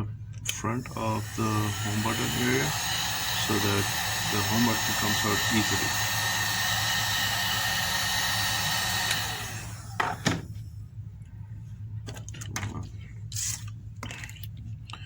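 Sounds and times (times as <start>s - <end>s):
hot-air blower running: 0.5s - 10.7s.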